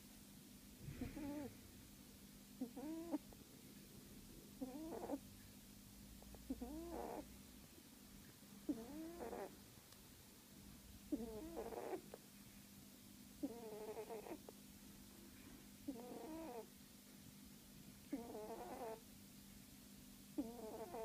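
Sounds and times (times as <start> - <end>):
cat snoring: 1.0 - 1.5, 2.6 - 3.2, 4.6 - 5.2, 6.3 - 7.3, 8.7 - 9.5, 11.1 - 12.1, 13.4 - 14.5, 15.9 - 16.7, 18.1 - 19.0, 20.4 - 21.0.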